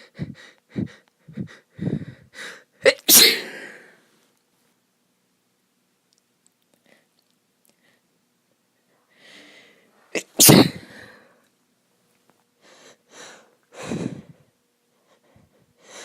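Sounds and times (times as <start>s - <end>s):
woman sneezing: 2.8s - 3.9s, 10.2s - 11.0s.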